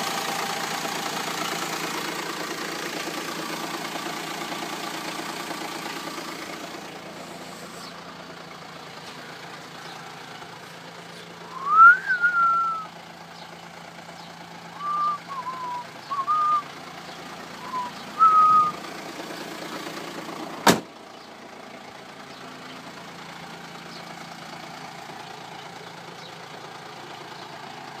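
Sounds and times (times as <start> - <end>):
diesel engine idling: 0.0 - 28.0
short whistling tones: 11.5 - 12.9, 14.8 - 16.7, 17.6 - 18.8.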